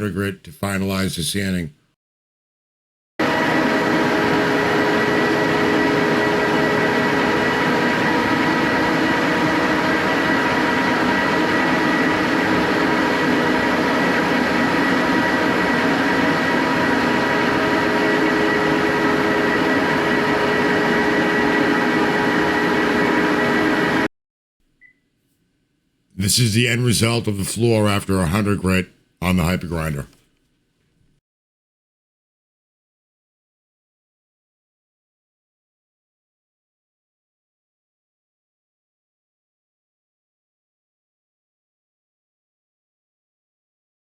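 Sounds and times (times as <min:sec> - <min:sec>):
floor sanding machine running: 0:03.2 - 0:24.1.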